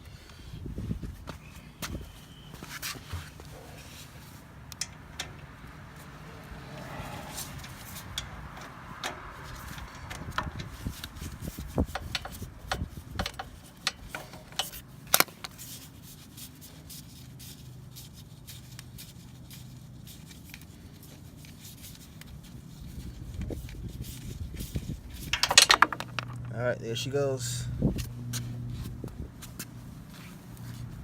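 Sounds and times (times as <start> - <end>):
wrench clicking and knocking on metal: 11.9 - 15.3, 25.3 - 26.5.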